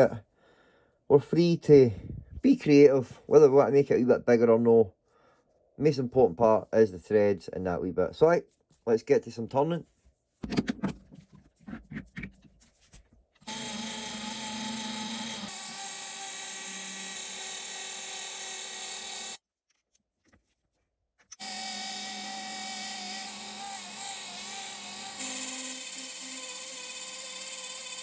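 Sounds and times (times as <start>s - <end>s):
metal lathe whine: 21.4s - 28.0s.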